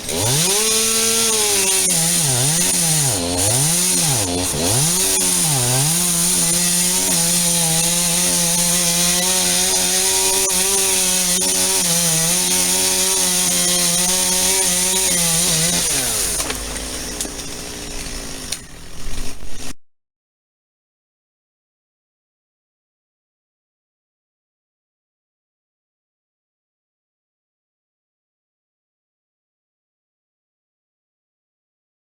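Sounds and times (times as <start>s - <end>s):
chainsaw cutting wood: 0.0s - 19.7s.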